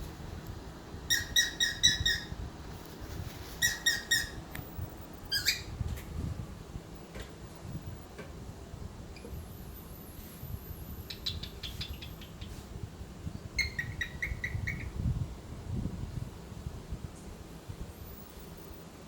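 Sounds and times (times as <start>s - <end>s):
cockatiel chirping: 1.1s - 2.3s, 3.5s - 4.4s, 5.3s - 5.7s, 11.0s - 12.5s, 13.6s - 14.9s.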